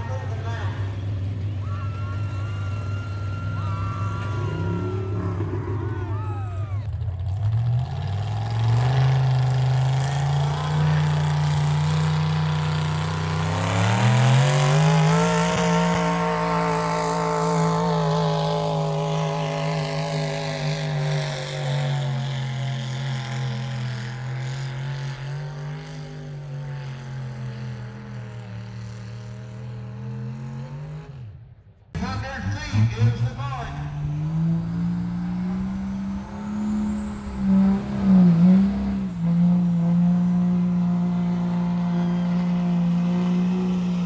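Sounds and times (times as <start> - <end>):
vehicle engine running hard: 0.0 - 44.0.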